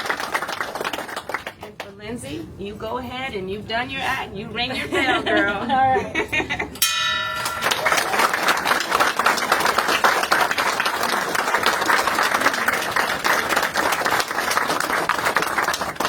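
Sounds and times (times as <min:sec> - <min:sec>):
people applauding: 0:00.0 - 0:01.8, 0:07.4 - 0:16.0.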